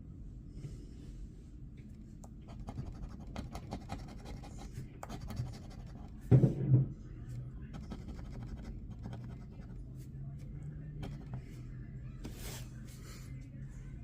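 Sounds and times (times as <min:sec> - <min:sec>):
lottery ticket being scratched: 0:02.5 - 0:06.2, 0:07.8 - 0:09.7.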